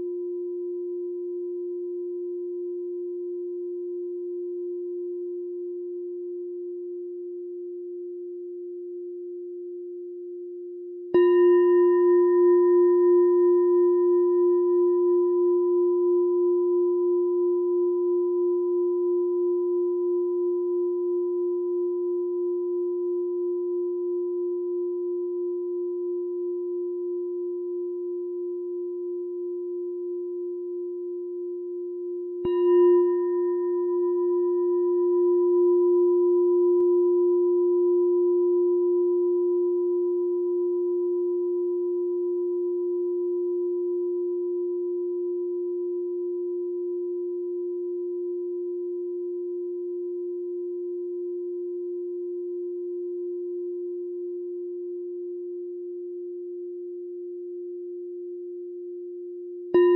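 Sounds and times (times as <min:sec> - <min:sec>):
meditation bell ringing: 0:11.2 - 0:25.4, 0:32.2 - 0:55.5.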